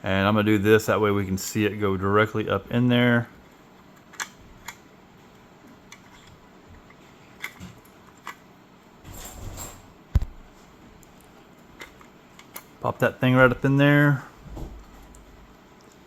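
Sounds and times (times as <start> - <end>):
small parts clicking and tapping: 5.7 - 8.5.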